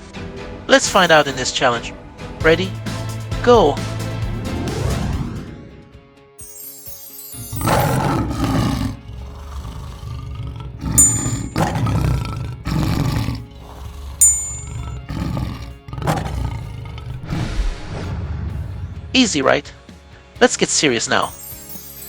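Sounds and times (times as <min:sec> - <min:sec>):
bright chime dings: 0:06.4 - 0:07.9, 0:21.3 - 0:22.0
large animal roaring: 0:07.5 - 0:18.0.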